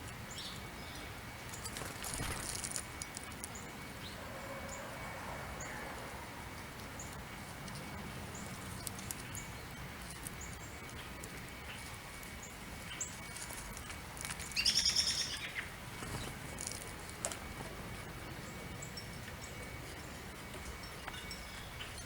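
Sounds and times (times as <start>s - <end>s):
songbirds chirping: 0.0s - 22.0s.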